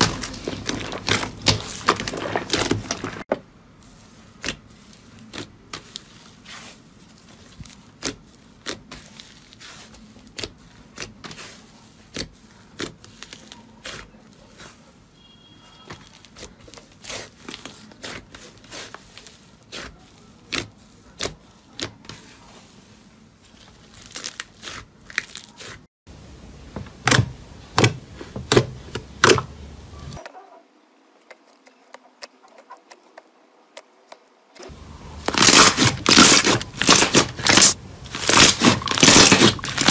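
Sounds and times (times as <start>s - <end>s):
slime crackling and popping: 0.0s - 3.3s, 34.7s - 39.9s.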